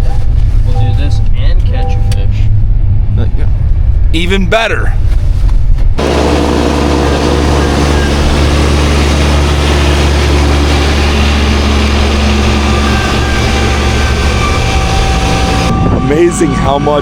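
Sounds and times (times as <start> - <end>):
tractor engine running at high revs: 5.6 - 17.0
snowblower rushing noise: 6.0 - 17.0.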